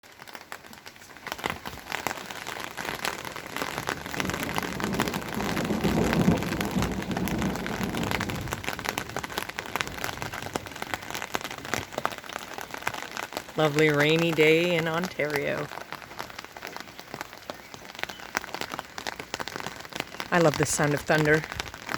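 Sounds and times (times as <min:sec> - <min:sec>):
close raindrops ticking: 0:00.0 - 0:21.9
rain falling: 0:00.0 - 0:21.9
low thunder rumble: 0:03.8 - 0:11.4.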